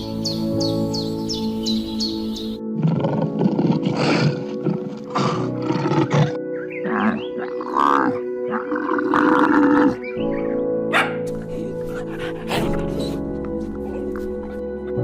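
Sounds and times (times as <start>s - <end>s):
background music: 0.0s - 15.0s
big cat roaring: 2.8s - 10.0s.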